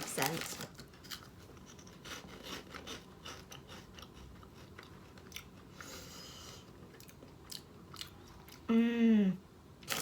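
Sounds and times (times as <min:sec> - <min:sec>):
person chewing crunchy chips: 0:00.2 - 0:06.0, 0:06.7 - 0:08.7.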